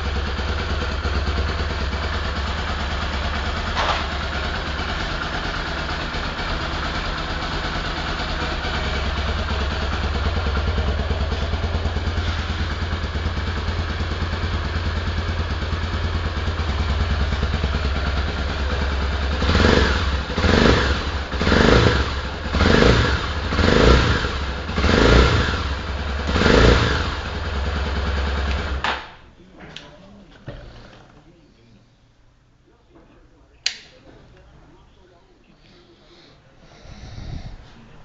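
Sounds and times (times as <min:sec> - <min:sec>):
motorcycle engine idling and revving: 0:00.0 - 0:29.0.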